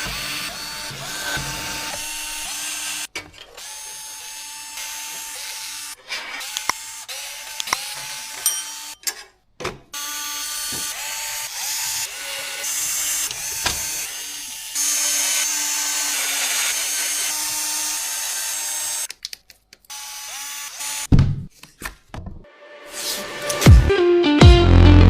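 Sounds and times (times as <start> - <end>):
electric screwdriver whirring: 6.4 - 8.9.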